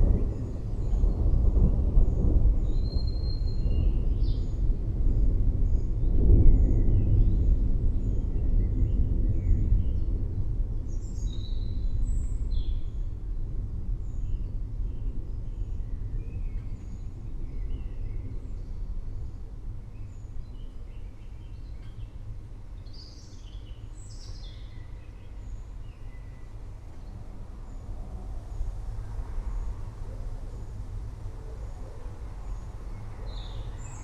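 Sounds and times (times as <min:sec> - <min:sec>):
distant thunder rumbling: 0:00.0 - 0:10.7
forest birds chirping: 0:10.9 - 0:13.2, 0:14.0 - 0:34.0.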